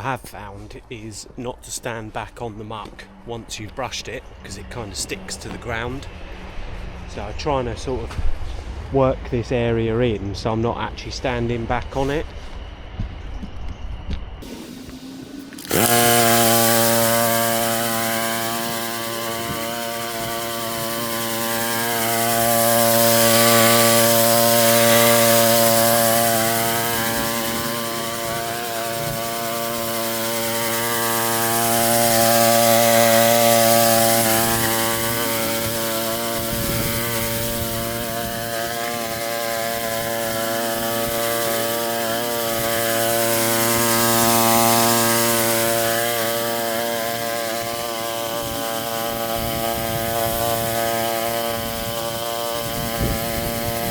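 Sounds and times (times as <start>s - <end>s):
brush scrubbing ground: 14.4s - 53.9s
petrol engine running: 14.4s - 53.9s.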